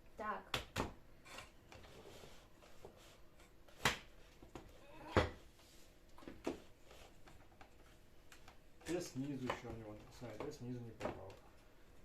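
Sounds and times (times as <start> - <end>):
small clicks and rustles: 6.0 - 12.0.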